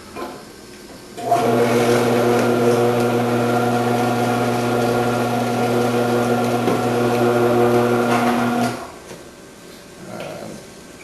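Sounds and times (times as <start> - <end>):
vegetable cutter motor humming: 1.2 - 8.8.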